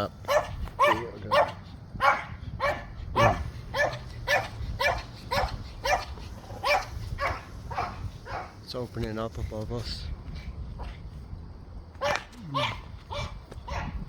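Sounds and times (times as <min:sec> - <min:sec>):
dog barking: 0:00.2 - 0:08.6, 0:12.0 - 0:14.0.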